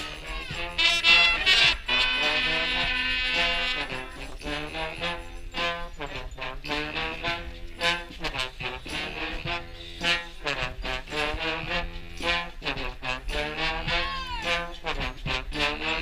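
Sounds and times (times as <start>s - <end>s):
drum beat: 0.0s - 4.4s, 8.2s - 15.5s
brass band playing: 0.0s - 16.0s.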